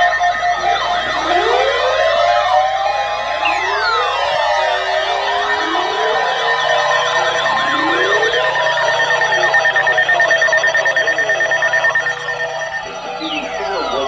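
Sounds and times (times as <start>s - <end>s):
electronic sirens rising and falling: 0.0s - 14.0s
fast-pulsing tone: 3.4s - 14.0s.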